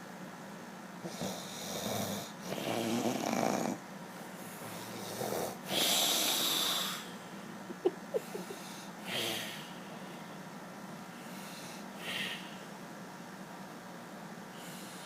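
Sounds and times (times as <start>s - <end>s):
man snoring: 1.0s - 3.8s, 4.6s - 7.0s, 9.1s - 9.6s.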